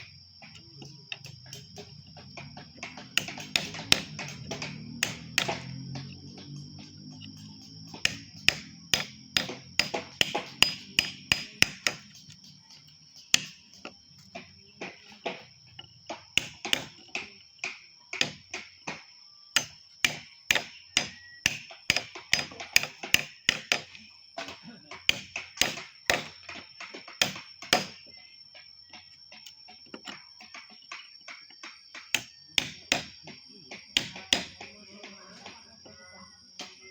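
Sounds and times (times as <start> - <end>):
chisel struck with a mallet: 2.8 - 6.2, 8.0 - 12.1, 13.4 - 13.6, 16.4 - 19.0, 19.6 - 23.9, 25.1 - 26.4, 34.0 - 34.7.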